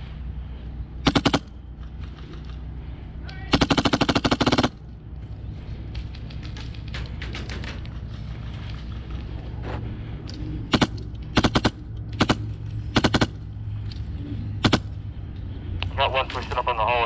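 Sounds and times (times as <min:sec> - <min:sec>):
low hum: 0:00.0 - 0:17.0
airsoft guns firing: 0:01.0 - 0:02.3, 0:03.5 - 0:04.8, 0:10.7 - 0:13.4, 0:14.6 - 0:15.0.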